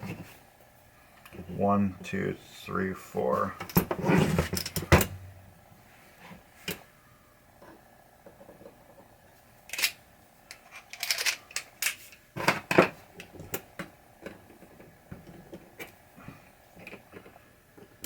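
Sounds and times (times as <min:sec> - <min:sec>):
small metal parts clattering: 0:09.7 - 0:12.8.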